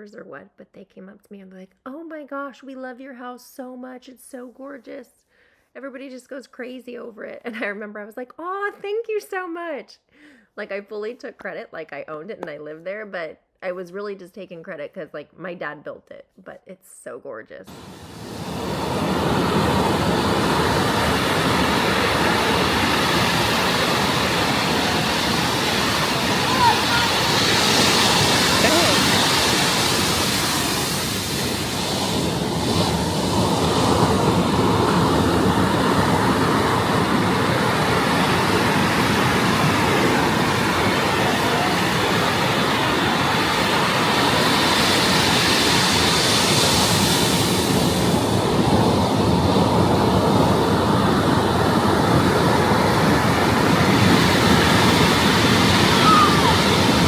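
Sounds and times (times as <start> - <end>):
ocean surf breaking: 17.7 - 57.0.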